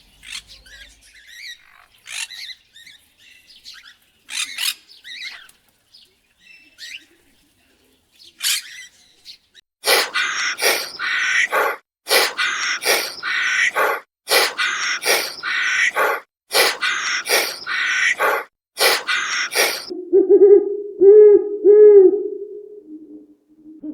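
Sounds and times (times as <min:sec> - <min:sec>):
birds chirping: 0:09.9 - 0:19.9
harsh bird calls: 0:09.9 - 0:19.9.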